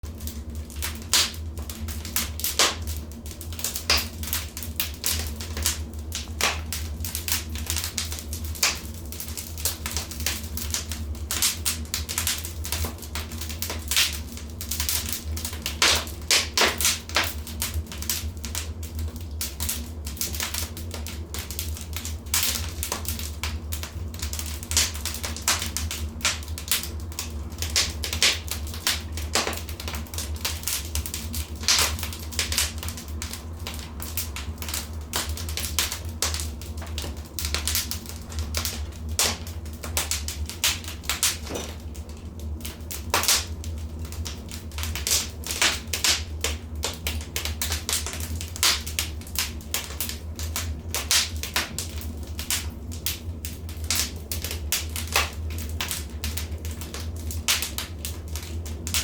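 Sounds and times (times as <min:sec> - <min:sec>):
low rumble of burning: 0:00.0 - 0:59.0
wood fire crackling: 0:00.0 - 0:59.0.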